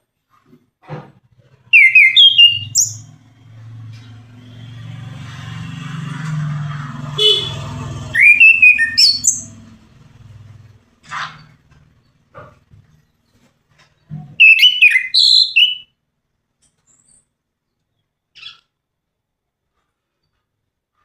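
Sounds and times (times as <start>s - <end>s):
thrush singing whistled phrases: 1.7s - 3.2s, 7.2s - 9.7s, 14.4s - 15.9s.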